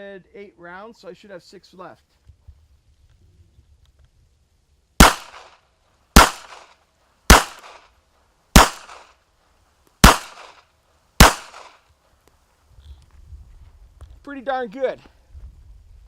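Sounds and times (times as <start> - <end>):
pistol shots with echo: 5.0 - 5.6, 6.2 - 6.7, 7.3 - 7.9, 8.6 - 9.1, 10.0 - 10.6, 11.2 - 11.8.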